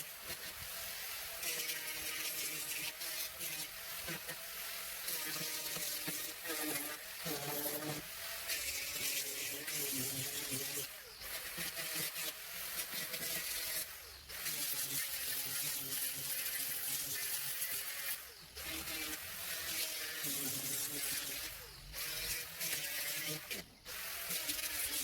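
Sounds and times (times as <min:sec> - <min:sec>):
power sander on wood: 0:00.0 - 0:25.0.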